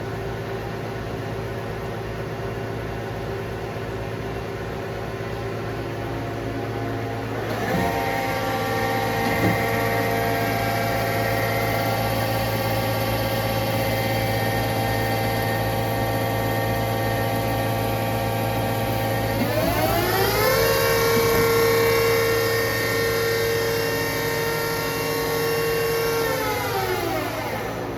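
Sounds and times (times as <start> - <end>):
lathe motor whine: 6.6 - 27.9.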